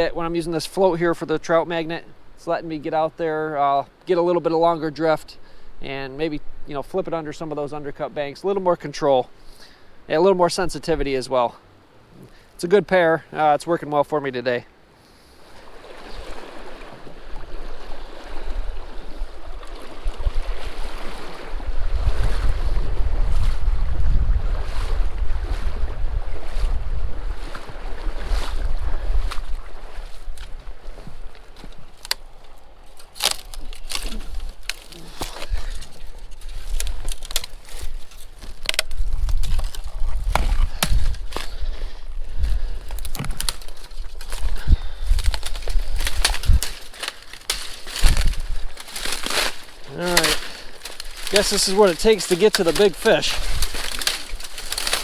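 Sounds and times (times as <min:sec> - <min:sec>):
stream water rushing: 0:14.7 - 0:55.0
wind buffeting microphone: 0:17.2 - 0:32.0, 0:38.6 - 0:46.8, 0:47.9 - 0:48.8
twigs snapping underfoot: 0:29.2 - 0:55.0.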